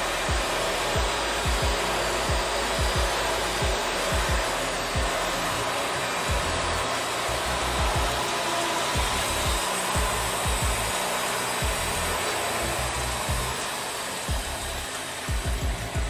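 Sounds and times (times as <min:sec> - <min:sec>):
bandsaw cutting through log: 0:00.0 - 0:16.0
short low thumps: 0:01.0 - 0:04.4, 0:05.0 - 0:05.2, 0:07.8 - 0:08.2.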